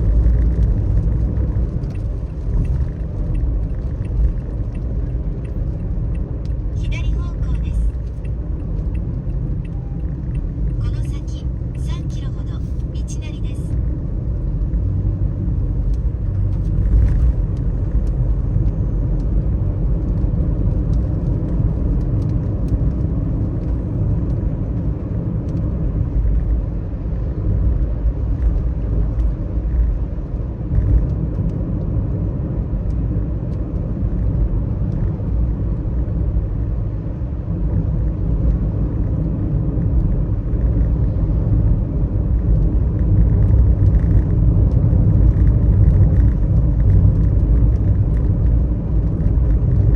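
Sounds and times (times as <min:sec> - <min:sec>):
car engine and tyres on wet road: 0:00.0 - 0:49.9
faint rain ticks: 0:00.2 - 0:12.8, 0:15.9 - 0:26.6.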